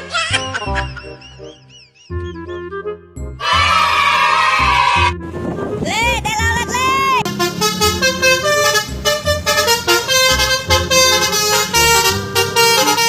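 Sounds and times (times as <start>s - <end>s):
musical bus horn melody: 2.2s - 5.8s, 6.6s - 13.0s.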